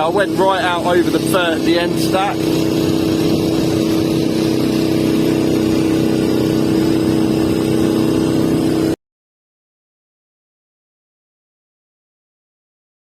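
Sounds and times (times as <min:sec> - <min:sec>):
drone propellers humming: 0:00.0 - 0:09.0.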